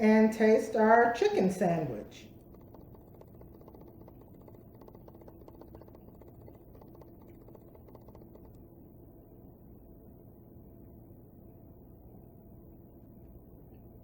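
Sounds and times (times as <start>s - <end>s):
crunchy chewing: 2.4s - 8.6s.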